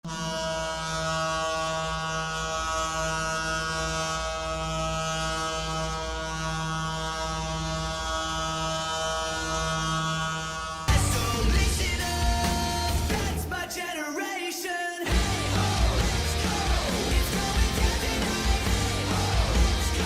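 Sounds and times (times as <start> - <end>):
goal horn blast: 15.1 - 20.0.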